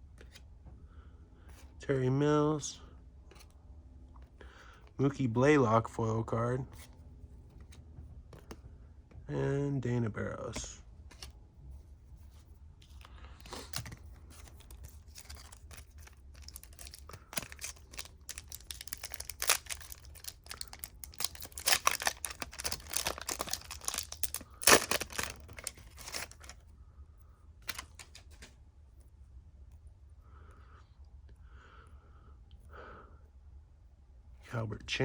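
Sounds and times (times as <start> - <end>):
wrapper crinkling: 13.5 - 26.6, 27.6 - 28.5
wrapper ripping: 13.5 - 26.6, 27.6 - 28.4.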